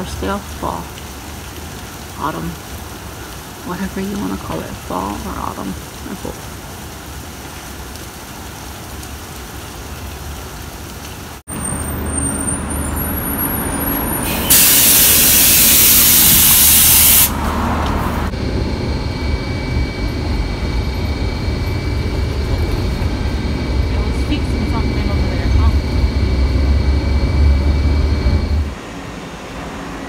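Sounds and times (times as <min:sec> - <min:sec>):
steady rain: 0:00.0 - 0:12.3, 0:12.9 - 0:28.8
bus engine running: 0:11.5 - 0:30.0
air brakes hissing: 0:11.6 - 0:17.6.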